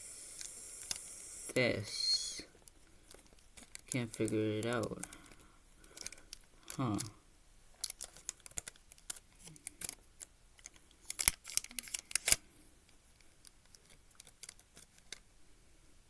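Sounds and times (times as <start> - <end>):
plastic puzzle pieces clicking: 2.6 - 7.1, 7.8 - 10.0, 10.6 - 12.4, 13.2 - 15.2.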